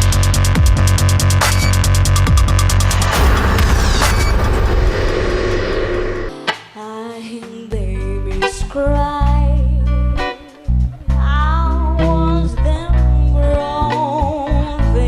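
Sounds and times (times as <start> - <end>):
heavy bass line: 0.0 - 6.4.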